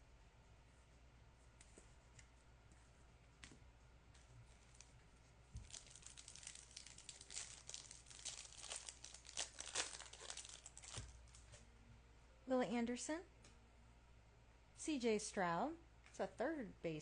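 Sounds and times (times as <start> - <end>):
wrapper tearing and crinkling: 5.6 - 11.5.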